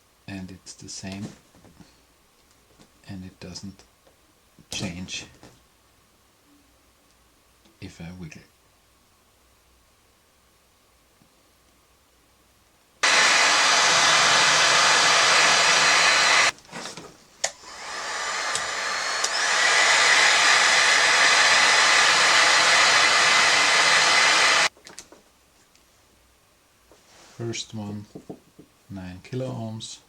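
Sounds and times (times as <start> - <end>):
hot-air blower running: 13.0 - 16.5, 17.4 - 24.7.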